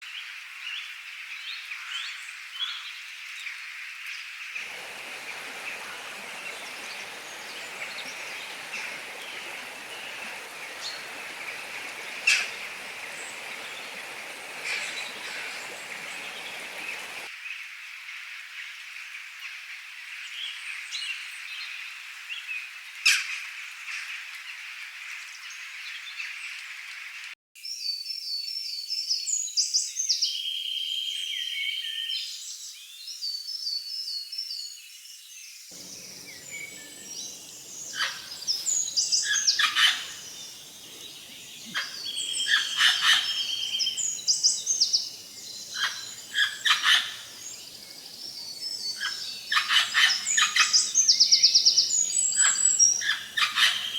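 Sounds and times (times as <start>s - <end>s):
birds chirping and singing: 4.6s - 17.3s, 35.8s - 53.9s
steady high hiss: 4.6s - 17.3s, 35.8s - 53.9s.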